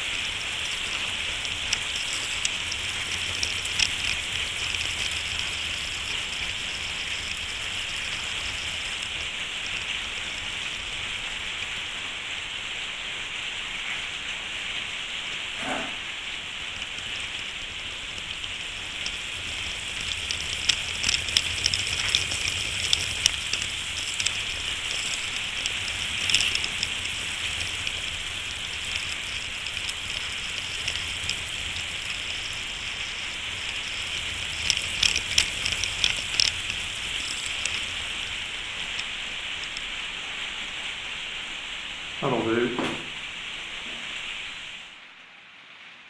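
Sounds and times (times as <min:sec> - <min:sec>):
steady hiss: 0:00.0 - 0:46.0
small parts clicking: 0:00.1 - 0:09.1, 0:16.9 - 0:39.9.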